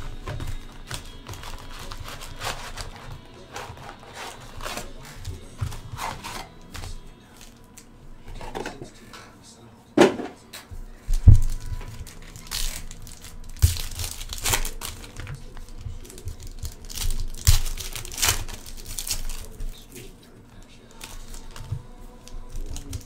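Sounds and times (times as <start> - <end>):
wrappers tearing and crinkling: 0.0 - 8.5, 11.1 - 20.1, 20.7 - 23.0.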